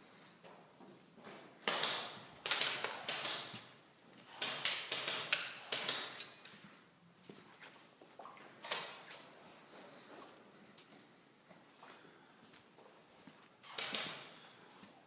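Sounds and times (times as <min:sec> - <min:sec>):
airsoft guns firing: 0:01.6 - 0:03.7, 0:04.3 - 0:06.2, 0:13.6 - 0:14.5.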